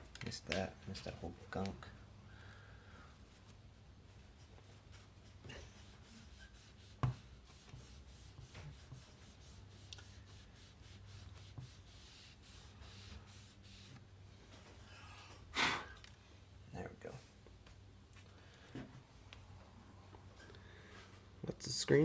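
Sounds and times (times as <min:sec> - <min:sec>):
hand rubbing laptop screen: 0:04.2 - 0:14.1.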